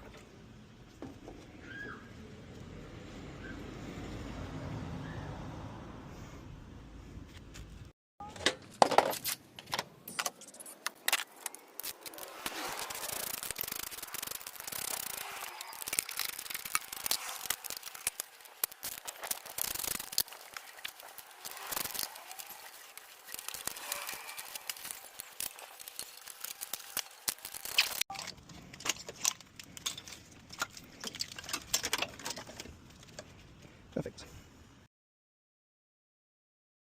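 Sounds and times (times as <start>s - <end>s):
metal parts clinking and rattling: 8.3s - 33.3s.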